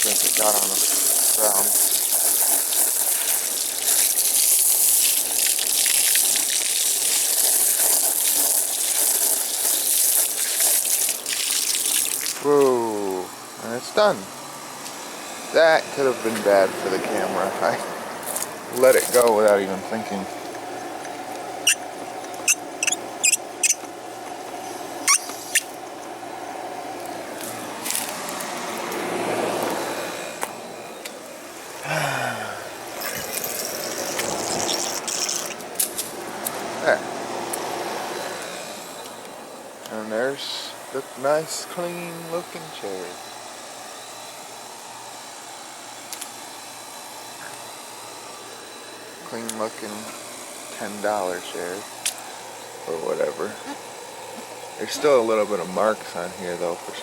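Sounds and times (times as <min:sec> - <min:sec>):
water spraying from a hose: 0:00.0 - 0:14.2, 0:15.6 - 0:20.2, 0:27.3 - 0:30.2, 0:32.0 - 0:38.5, 0:39.9 - 0:45.4, 0:48.9 - 0:57.0
short sharp high squeaks: 0:21.6 - 0:21.8, 0:22.4 - 0:23.9, 0:25.0 - 0:25.8.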